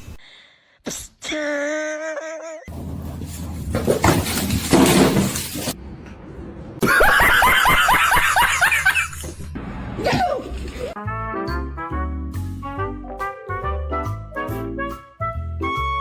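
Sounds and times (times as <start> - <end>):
scuffle noise: 2.7 - 5.8
person cackling laughter: 6.8 - 9.4.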